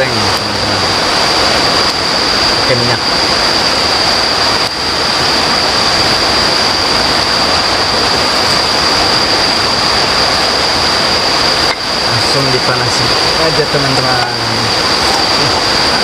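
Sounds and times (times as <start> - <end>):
high-pitched whine: 0.0 - 16.0
river rushing: 0.0 - 16.0.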